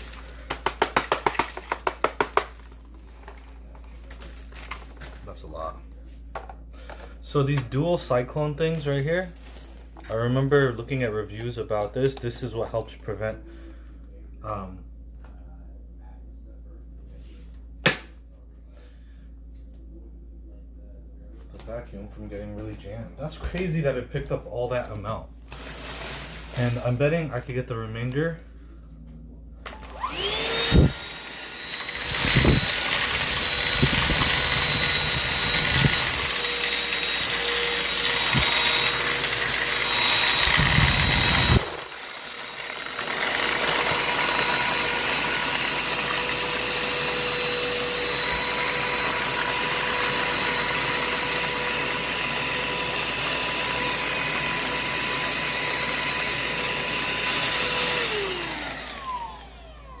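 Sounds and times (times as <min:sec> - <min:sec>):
handheld vacuum whine: 0:29.6 - 1:00.0
vacuum motor winding down: 0:29.7 - 1:00.0.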